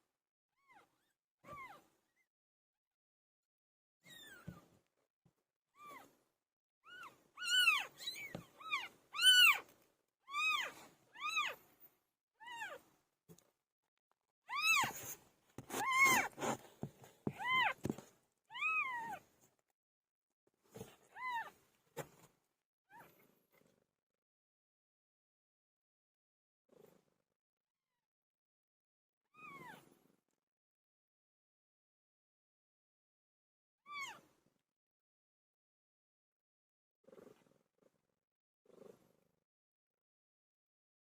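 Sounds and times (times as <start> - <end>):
kittens mewing: 14.5 - 16.6.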